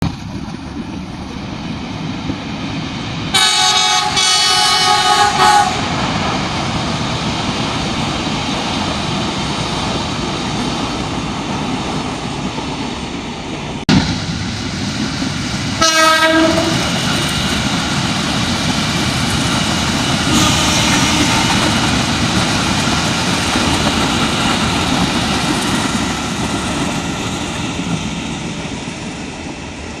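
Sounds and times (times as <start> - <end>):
train horn: 3.3 - 6.0, 15.8 - 16.9, 20.3 - 22.6
train wheels clattering on rails: 13.9 - 30.0.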